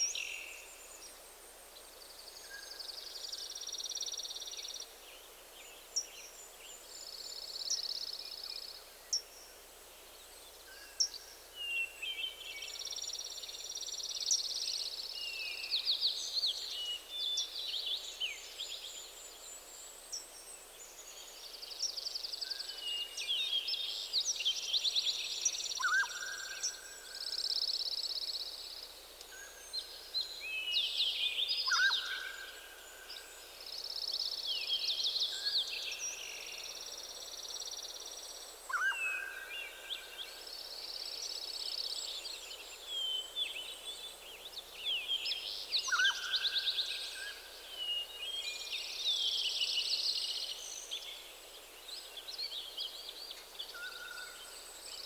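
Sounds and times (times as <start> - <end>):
faint steady hiss: 0.0 - 55.0
songbirds singing: 11.0 - 55.0.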